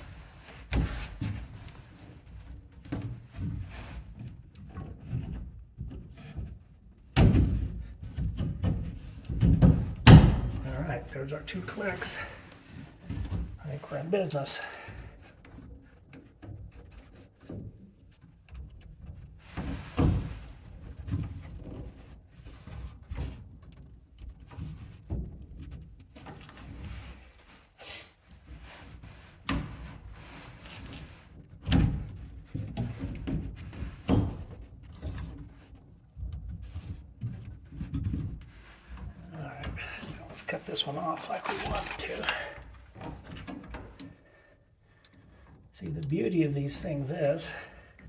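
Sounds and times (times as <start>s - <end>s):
knocks from handling plastic pipe: 9.4s - 10.6s.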